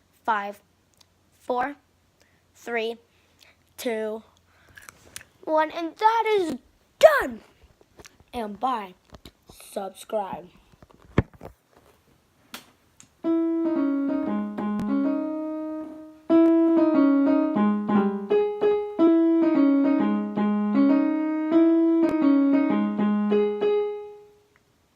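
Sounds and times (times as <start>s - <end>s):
piano-like keyboard melody: 13.2s - 24.4s.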